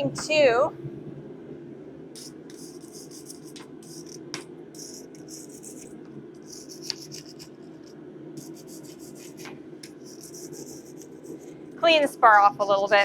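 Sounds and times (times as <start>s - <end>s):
steady low hum: 0.0s - 13.0s
wire brush scrubbing steel: 2.2s - 4.2s, 8.4s - 13.0s.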